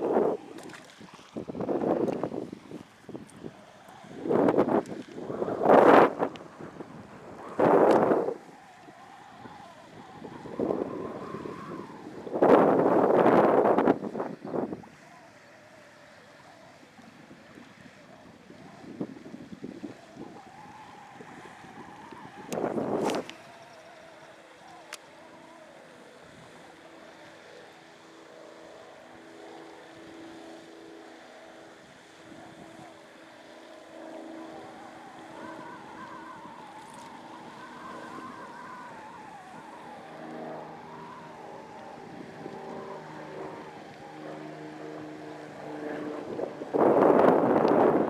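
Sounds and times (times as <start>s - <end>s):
wind buffeting microphone: 0.0s - 15.1s, 17.2s - 23.8s, 33.8s - 48.0s
distant engine droning: 0.0s - 48.0s.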